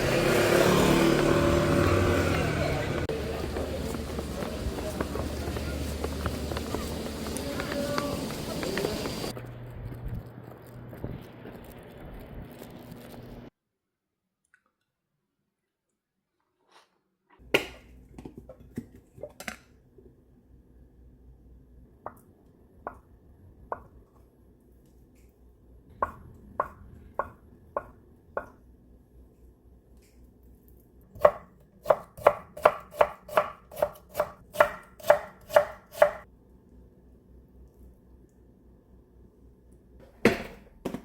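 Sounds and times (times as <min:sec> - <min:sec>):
knife chopping on cutting board: 0:31.2 - 0:36.2.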